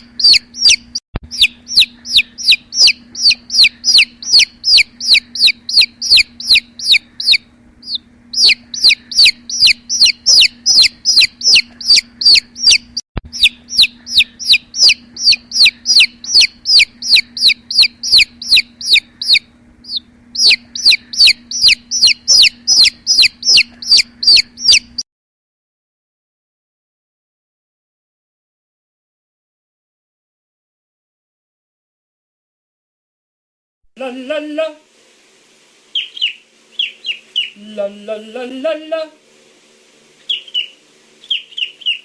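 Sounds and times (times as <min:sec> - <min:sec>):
faint steady hum: 0:00.0 - 0:25.0, 0:34.0 - 0:42.0
bird calling in high sliding notes: 0:00.1 - 0:25.0, 0:35.9 - 0:37.6, 0:40.2 - 0:42.0.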